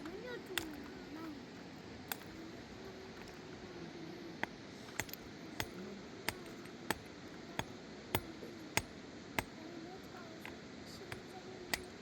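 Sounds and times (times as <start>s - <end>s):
hammer tapping: 4.9s - 9.5s, 10.4s - 12.0s.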